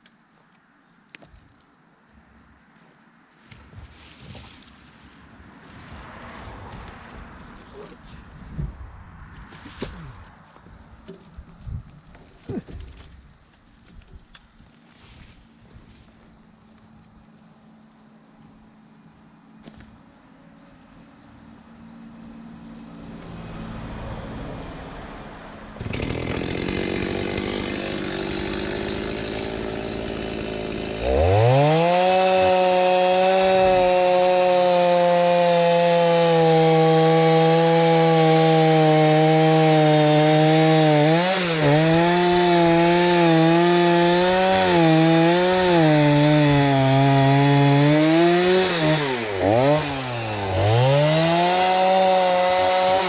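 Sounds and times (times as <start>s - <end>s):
chainsaw cutting wood: 25.8s - 53.0s.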